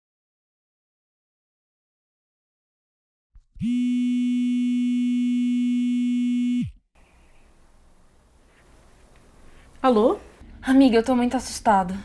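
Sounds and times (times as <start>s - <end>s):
electronic buzzing tone: 3.6s - 6.8s.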